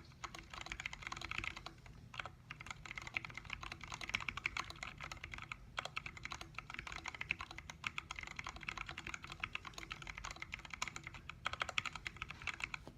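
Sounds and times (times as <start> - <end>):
fast typing on mechanical keyboard: 0.0 - 12.8.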